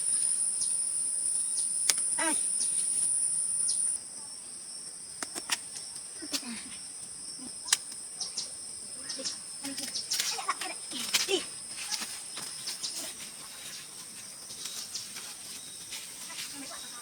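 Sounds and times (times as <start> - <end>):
insects buzzing: 0.0 - 17.0
sharp clicks: 1.8 - 2.2.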